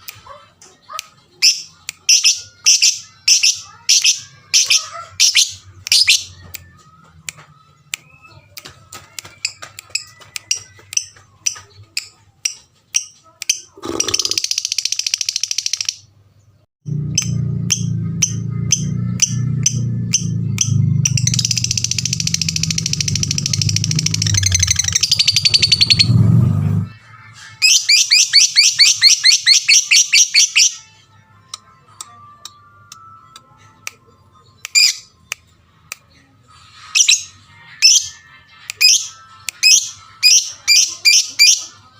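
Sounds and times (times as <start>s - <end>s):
bird chirping and trilling: 1.4s - 6.6s, 12.0s - 16.1s, 17.0s - 26.3s, 27.6s - 30.9s, 34.6s - 35.1s, 36.7s - 41.7s.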